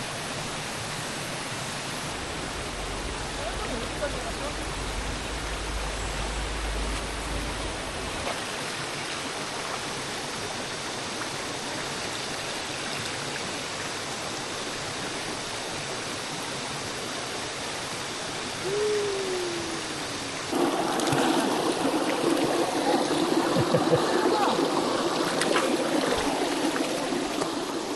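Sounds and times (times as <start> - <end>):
stream water rushing: 0.0 - 27.9
low rumble: 2.0 - 8.3.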